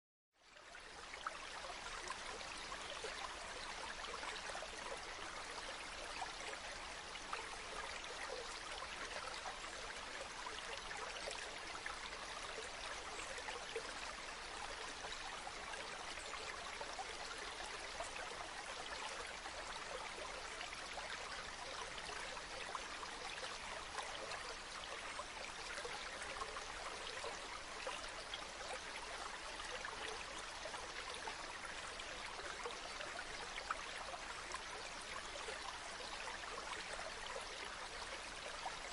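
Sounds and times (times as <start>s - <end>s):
stream flowing over stones: 0.5s - 38.9s.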